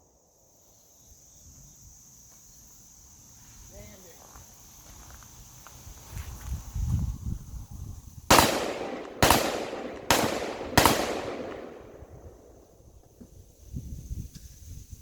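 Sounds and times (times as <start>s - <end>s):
gunshots with echoing tail: 8.3s - 12.8s.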